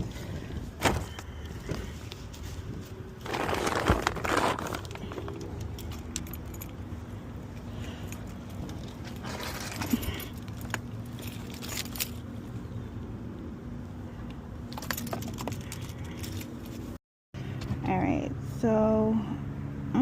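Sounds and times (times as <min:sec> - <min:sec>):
metallic clinking and rattling: 0:03.2 - 0:12.4, 0:14.7 - 0:17.0.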